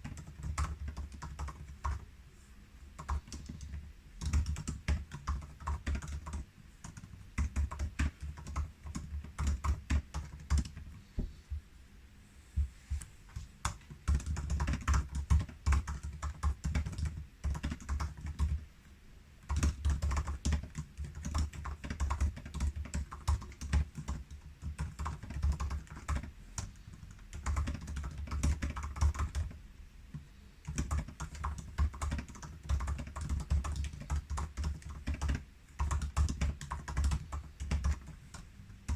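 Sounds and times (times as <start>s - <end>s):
keyboard typing clicks: 3.0s - 10.8s.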